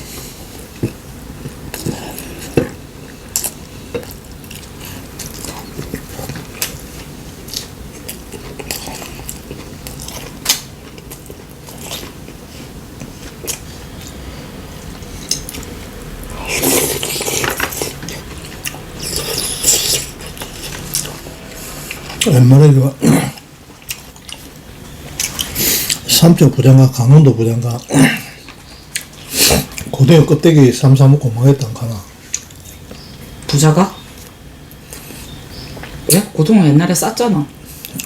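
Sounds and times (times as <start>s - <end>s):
chewing: 0.8s - 14.2s, 14.8s - 15.8s, 16.4s - 22.3s, 23.2s - 26.1s, 27.8s - 30.0s.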